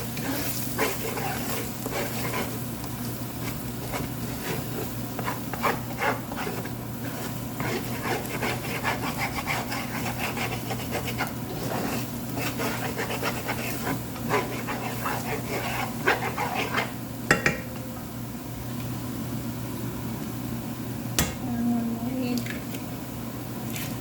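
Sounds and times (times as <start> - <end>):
spatula scraping a frying pan: 0.0 - 17.0
steady low hum: 0.0 - 23.6.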